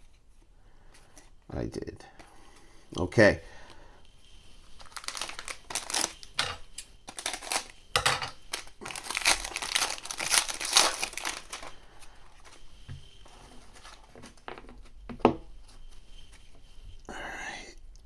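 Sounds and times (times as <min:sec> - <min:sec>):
plastic wrapper crinkling and tearing: 0:04.7 - 0:12.6.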